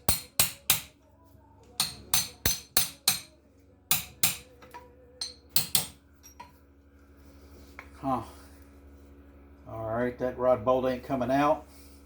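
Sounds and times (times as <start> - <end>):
hammer striking metal bolt: 0.0 - 0.9, 1.8 - 3.3, 5.2 - 6.0.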